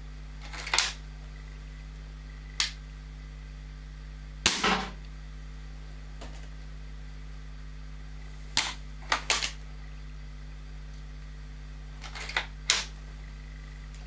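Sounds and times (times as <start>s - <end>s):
air rifle firing crack: 4.5s - 5.0s.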